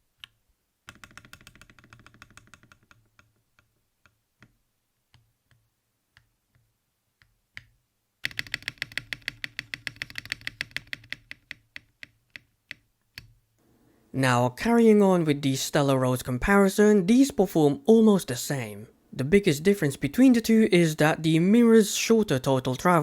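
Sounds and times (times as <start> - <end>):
mechanical keyboard typing: 0.9 - 3.0, 8.2 - 13.3.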